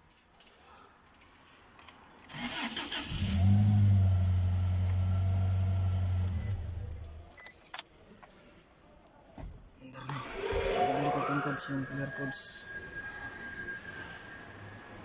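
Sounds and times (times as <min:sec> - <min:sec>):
engine cranking: 0:02.3 - 0:03.7
engine humming: 0:03.0 - 0:07.3.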